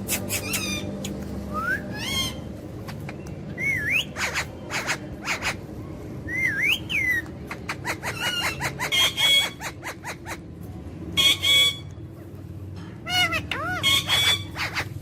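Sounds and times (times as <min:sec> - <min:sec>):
parrot chirps: 0:00.0 - 0:10.5, 0:11.2 - 0:12.0, 0:13.0 - 0:15.0
parrot whistling: 0:00.1 - 0:02.5, 0:03.6 - 0:05.6, 0:06.3 - 0:10.4, 0:13.2 - 0:14.9.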